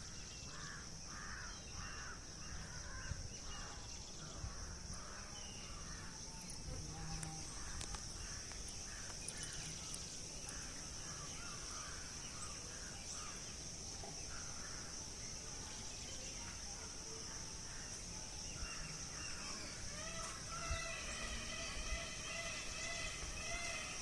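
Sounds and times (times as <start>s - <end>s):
insect chorus drone: 0.0s - 24.0s
faint bird calls: 17.6s - 24.0s.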